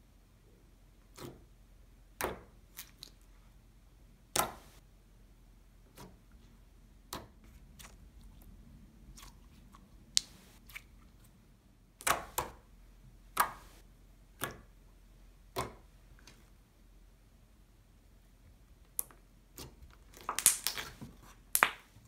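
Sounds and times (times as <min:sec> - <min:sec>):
slime clicks and bubble pops: 0:20.3 - 0:20.9.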